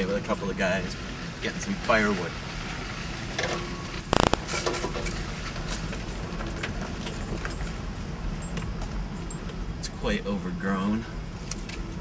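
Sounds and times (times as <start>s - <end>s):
engine and tyre rumble: 0.0s - 12.0s
loud burst of rapid rattling: 4.1s - 4.5s.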